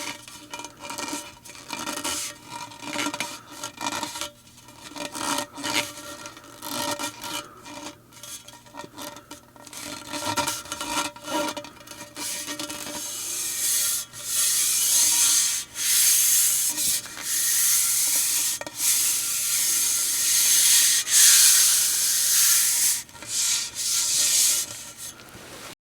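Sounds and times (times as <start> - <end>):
fuel pumping hiss: 12.2 - 25.6.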